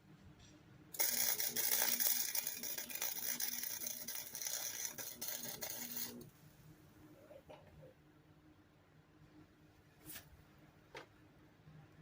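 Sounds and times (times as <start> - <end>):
welder crackling sizzle: 1.0 - 6.3.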